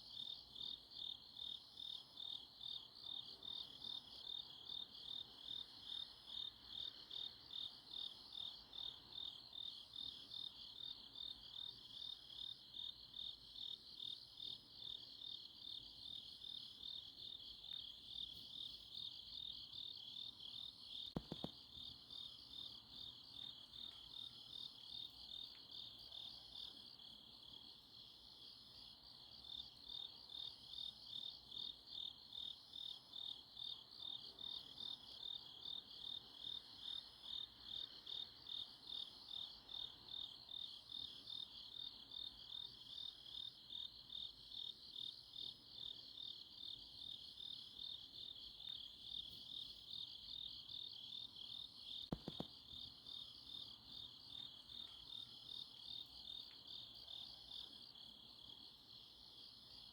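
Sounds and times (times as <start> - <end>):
soft knock: 21.2 - 21.6.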